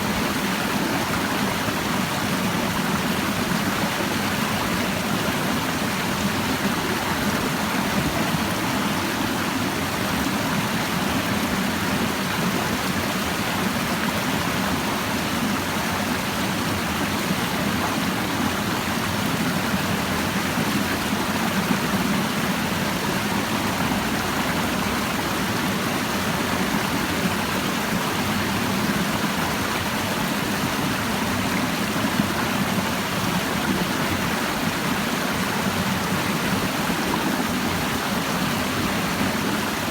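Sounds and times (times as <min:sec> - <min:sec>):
stream babbling over rocks: 0:00.0 - 0:39.9.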